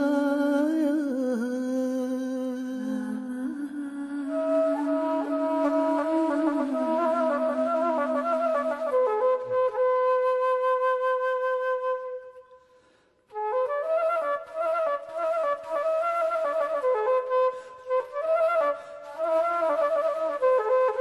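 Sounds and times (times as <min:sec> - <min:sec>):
flute melody: 0:04.2 - 0:12.6, 0:13.3 - 0:21.0.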